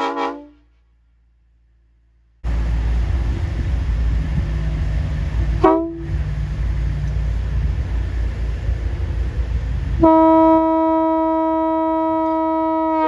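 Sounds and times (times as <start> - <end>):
train air horn toot: 0.0 - 0.8, 5.6 - 6.2, 10.0 - 13.0
steady low rumble: 1.4 - 12.2.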